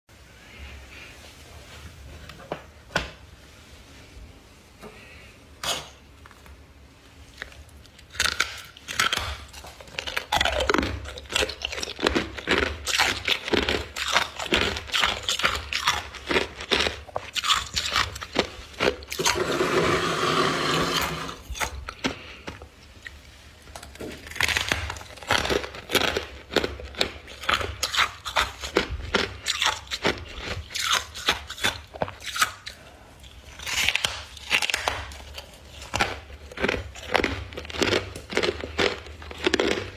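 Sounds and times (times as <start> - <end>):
crisp crunching of chewed frost: 7.3 - 20.0, 20.9 - 39.9.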